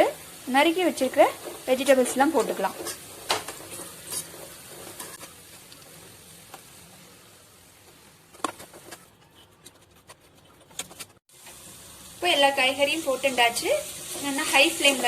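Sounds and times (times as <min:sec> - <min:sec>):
vegetables sizzling in oil: 0:00.0 - 0:08.8, 0:11.3 - 0:15.0
stirring clicks and knocks: 0:07.8 - 0:11.2.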